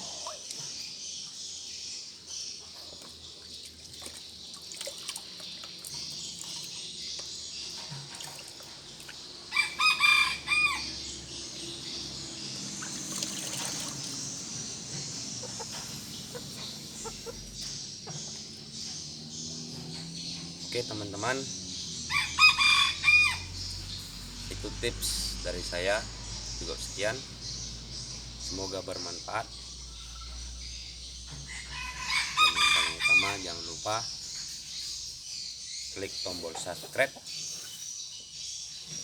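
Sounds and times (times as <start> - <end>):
rooster crowing: 9.5 - 11.2, 22.0 - 23.7, 31.4 - 33.5.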